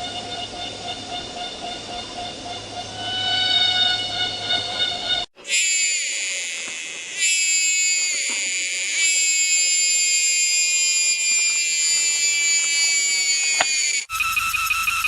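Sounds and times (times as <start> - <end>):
cicada buzzing: 0.0 - 15.0.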